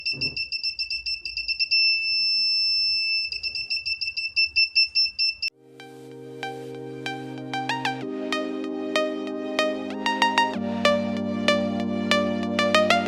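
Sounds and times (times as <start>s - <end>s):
electronic music: 5.5s - 13.0s.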